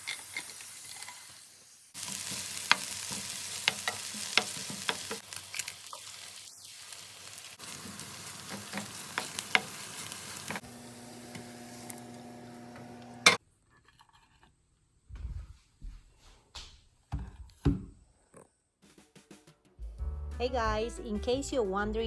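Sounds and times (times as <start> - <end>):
food sizzling in a frying pan: 0.0 - 13.4.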